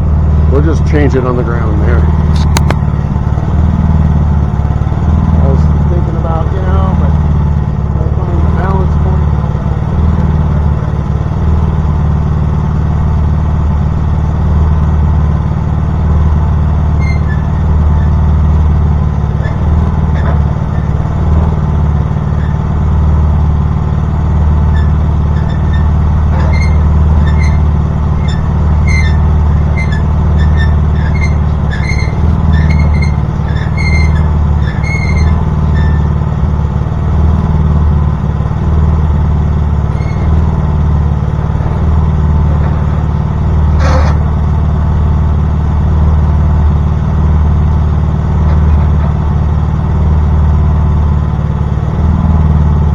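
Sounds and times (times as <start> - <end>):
gasoline engine running: 0.0 - 52.9
short high squeaks: 16.8 - 22.9, 24.0 - 36.4, 39.8 - 44.5.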